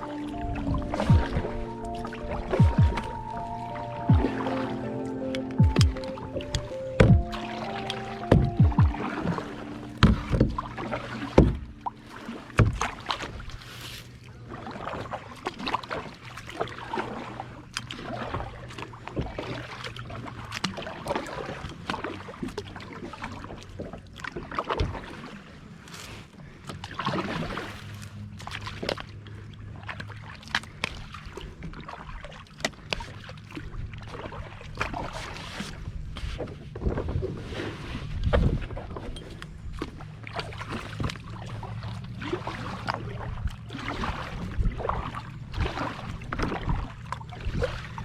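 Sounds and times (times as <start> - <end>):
paddle splashes: 0.0 - 48.0
water slapping: 0.0 - 48.0
paddle knocking against hull: 0.5 - 3.3, 5.5 - 13.3.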